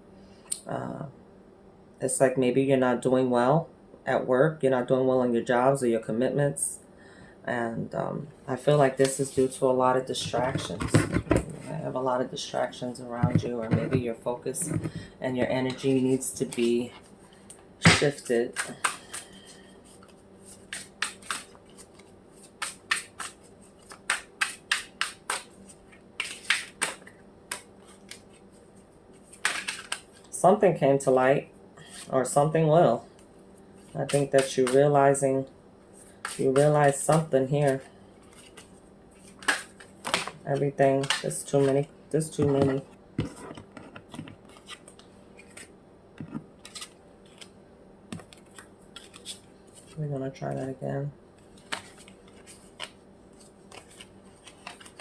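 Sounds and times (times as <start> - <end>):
cards being shuffled: 8.7 - 30.3, 33.8 - 34.9, 36.0 - 50.0, 51.4 - 55.0.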